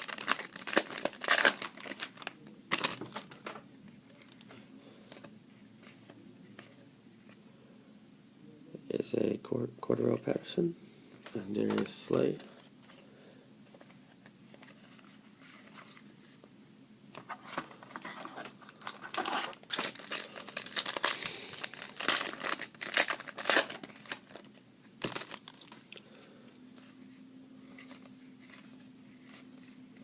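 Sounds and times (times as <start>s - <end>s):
wrapper crinkling: 0.0s - 3.4s, 18.0s - 25.9s.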